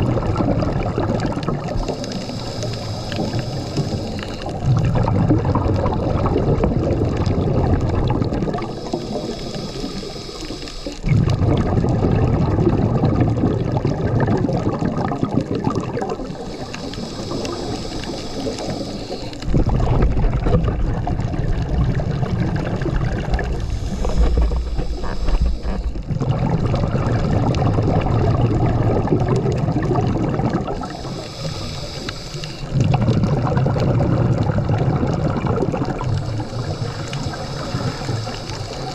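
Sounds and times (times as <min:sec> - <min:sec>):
exhaled bubbles gurgling underwater: 0:00.0 - 0:38.9
regulator inhale hiss: 0:01.7 - 0:04.7, 0:08.5 - 0:11.1, 0:16.2 - 0:19.5, 0:23.2 - 0:26.1, 0:30.7 - 0:32.8, 0:35.9 - 0:38.9.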